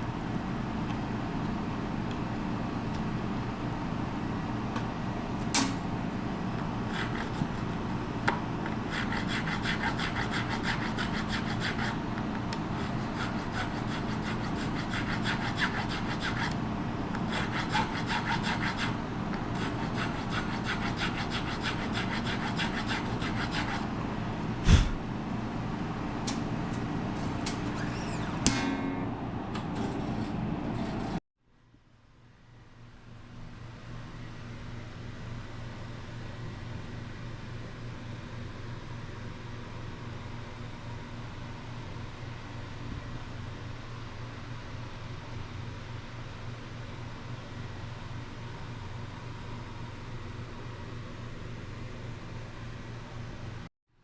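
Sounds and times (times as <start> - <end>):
filing or sanding wood: 6.9 - 7.7, 8.8 - 12.0, 12.7 - 16.6, 17.3 - 23.9, 24.6 - 25.0
sharp knock: 24.7 - 25.0.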